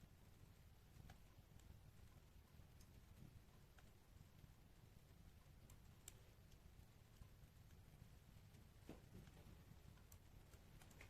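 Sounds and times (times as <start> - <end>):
faint wood fire crackling: 0.0 - 11.0.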